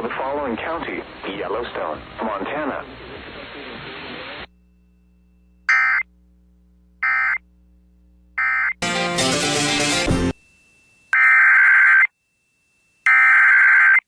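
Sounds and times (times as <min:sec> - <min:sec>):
radio hiss: 0:00.0 - 0:04.6
shrill digital data bursts: 0:09.3 - 0:14.0.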